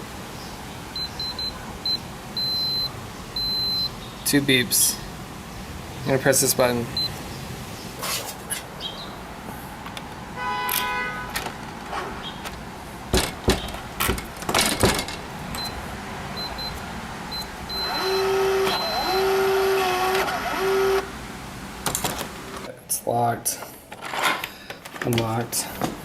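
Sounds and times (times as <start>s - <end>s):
short electronic beep: 1.0s - 3.9s, 17.4s - 19.4s
lock clicks and knocks: 12.4s - 15.2s
motorized bolt whirring: 17.7s - 21.1s.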